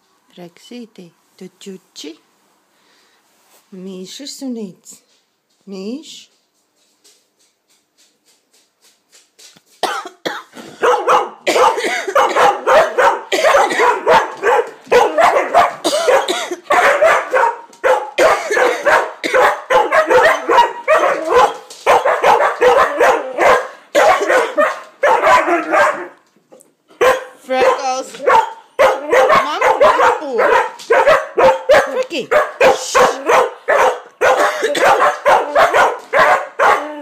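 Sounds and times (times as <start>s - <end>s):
person coughing: 9.8s - 14.2s, 15.8s - 16.8s, 18.2s - 19.5s, 24.0s - 24.6s, 34.2s - 35.2s
dog barking and yapping: 10.7s - 37.0s.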